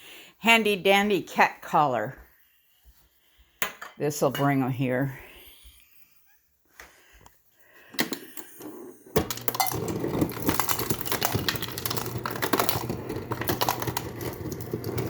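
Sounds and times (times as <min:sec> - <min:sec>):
ice cubes clattering: 0:09.2 - 0:15.0.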